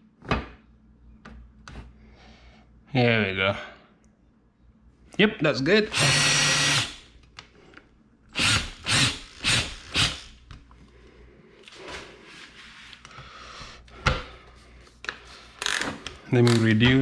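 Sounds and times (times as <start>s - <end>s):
power drill driving a fastener: 5.9s - 7.0s, 8.3s - 10.4s.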